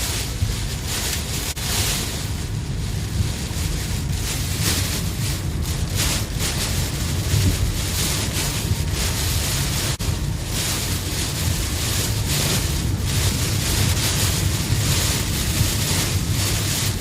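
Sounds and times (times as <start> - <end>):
strong wind buffeting microphone: 0.0 - 17.0.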